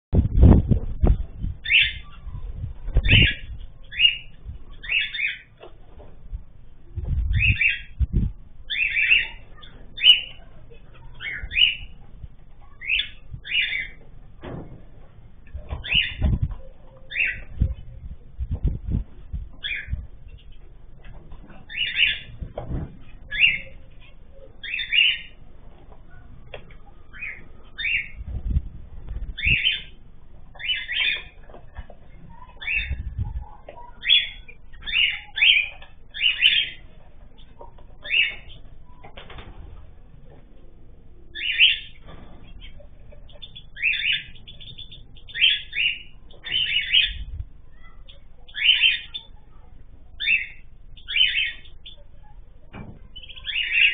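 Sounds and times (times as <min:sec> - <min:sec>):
low thumps: 0:00.1 - 0:01.6, 0:06.0 - 0:08.6, 0:14.0 - 0:16.7, 0:17.4 - 0:23.3, 0:28.2 - 0:29.7
small birds chirping: 0:00.3 - 0:53.9.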